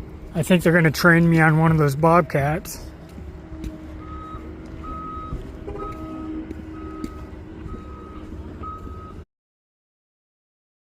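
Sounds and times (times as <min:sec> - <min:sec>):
diesel engine rumble: 0:00.0 - 0:09.2
vehicle backup alarm beeps: 0:03.4 - 0:09.2.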